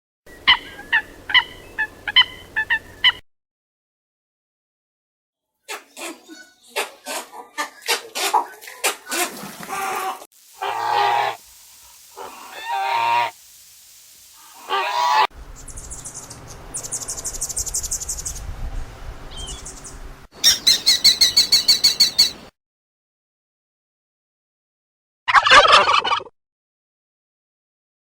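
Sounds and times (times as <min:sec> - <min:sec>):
outdoor background noise: 0:00.3 - 0:03.2, 0:05.7 - 0:22.5
rapid run of animal calls: 0:07.1 - 0:13.4, 0:14.4 - 0:16.0, 0:20.4 - 0:22.5
small birds chirping: 0:14.3 - 0:18.5, 0:19.3 - 0:22.5
short pitched animal calls: 0:20.4 - 0:22.4.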